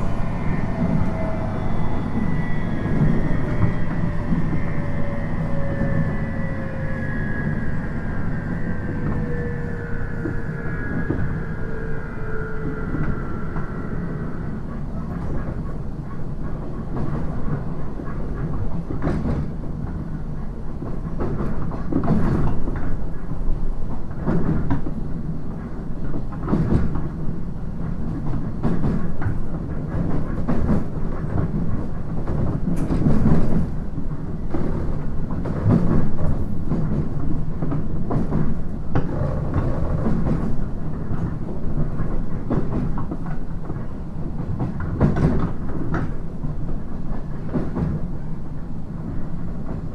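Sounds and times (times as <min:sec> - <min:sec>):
train low rumble: 0:00.0 - 0:49.9.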